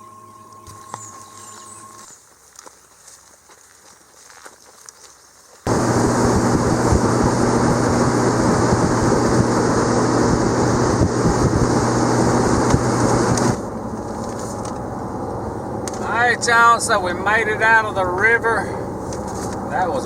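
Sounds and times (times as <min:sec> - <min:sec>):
wind rush on microphone: 0:05.7 - 0:13.6
outboard motor running: 0:05.7 - 0:13.8
steady vehicle hum: 0:05.7 - 0:20.0.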